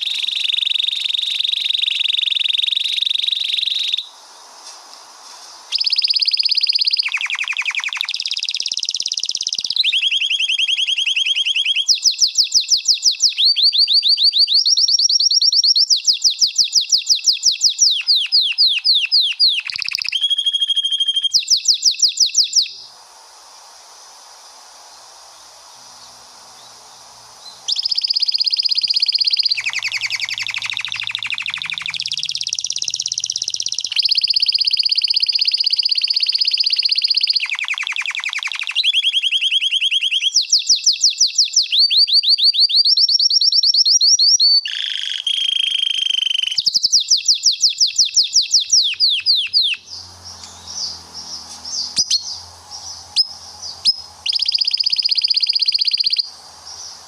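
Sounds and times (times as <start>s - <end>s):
canary singing trills: 0.0s - 4.1s, 5.7s - 22.9s, 27.4s - 57.0s
faint hiss: 0.0s - 9.8s, 21.6s - 37.6s, 49.8s - 57.0s.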